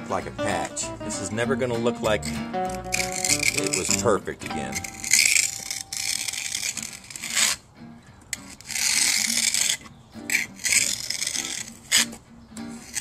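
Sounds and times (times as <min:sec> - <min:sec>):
faint guitar music: 0:00.0 - 0:13.0
trowel scraping wet concrete: 0:04.6 - 0:07.6, 0:08.4 - 0:12.2.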